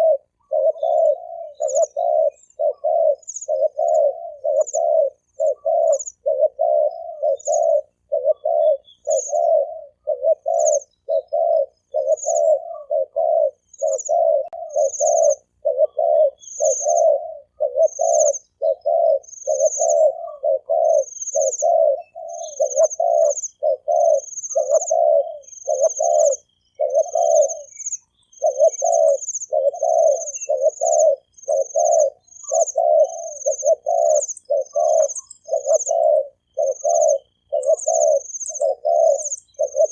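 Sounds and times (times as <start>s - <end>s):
dove cooing: 0.0s - 39.9s
very high chirp: 0.0s - 39.9s.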